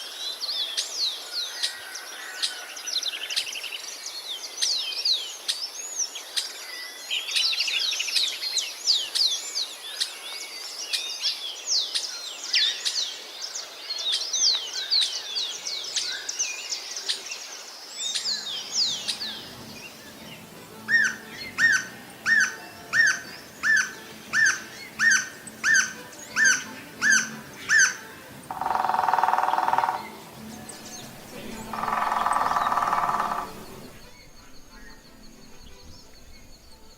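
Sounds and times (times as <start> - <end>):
songbirds chirping: 0.0 - 36.9
bird loud repeated call: 21.0 - 30.2, 31.0 - 34.1.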